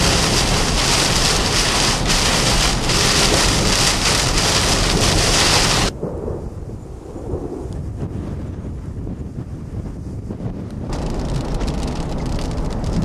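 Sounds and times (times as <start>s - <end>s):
heavy rain lashing a car: 0.0s - 5.9s, 10.9s - 13.0s
low wind rumble: 0.0s - 13.0s.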